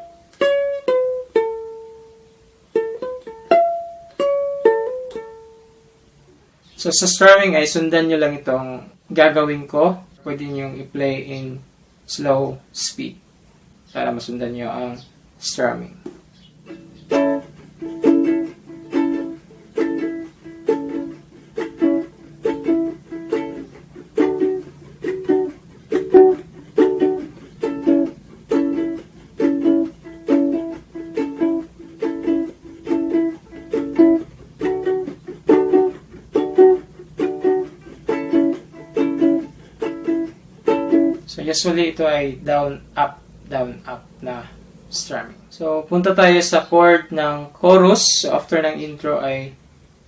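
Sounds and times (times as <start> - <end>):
ukulele chords strummed: 0.0 - 11.4, 15.7 - 45.0.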